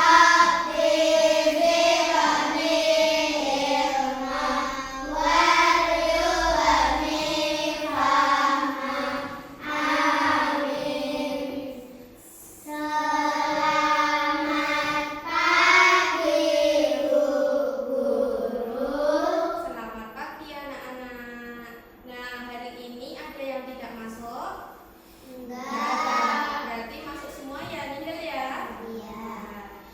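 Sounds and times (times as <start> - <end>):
children singing: 0.0 - 11.8, 12.7 - 19.3.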